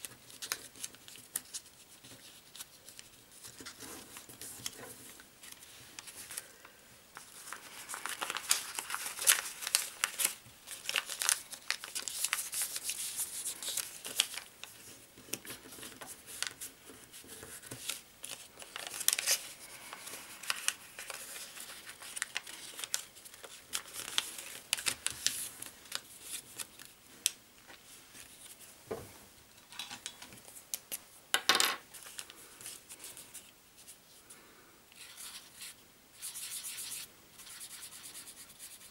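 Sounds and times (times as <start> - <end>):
paper being folded and creased: 0.0 - 6.5, 7.2 - 28.6.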